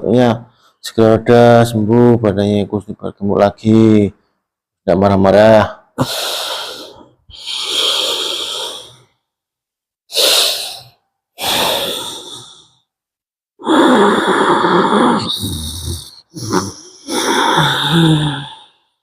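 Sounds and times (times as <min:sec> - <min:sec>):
person breathing hard: 0:06.0 - 0:09.2, 0:10.1 - 0:12.9, 0:13.6 - 0:19.0.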